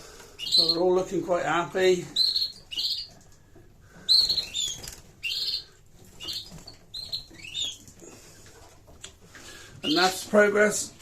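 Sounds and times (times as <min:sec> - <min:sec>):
canaries chirping: 0:00.0 - 0:11.0
wings fluttering: 0:02.2 - 0:09.0.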